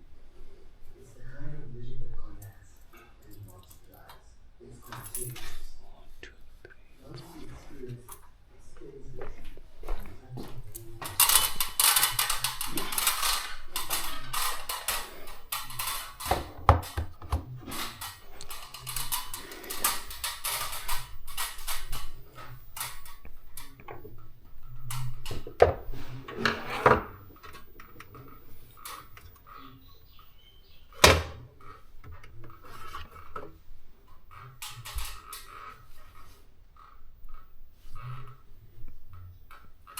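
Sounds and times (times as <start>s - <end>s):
rustling: 2.5s - 39.9s
small clicks and clatters: 10.6s - 25.7s
objects scraping on hard surface: 24.9s - 29.6s.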